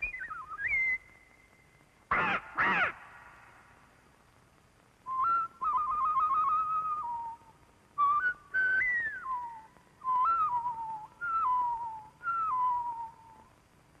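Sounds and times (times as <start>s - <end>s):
woman whistling bird calls: 0.0s - 1.6s, 5.1s - 13.4s.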